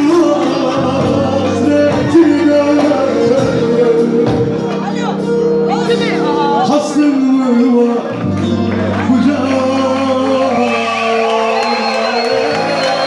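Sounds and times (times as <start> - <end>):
instrumental accompaniment: 0.0 - 13.0
man singing: 0.0 - 13.0.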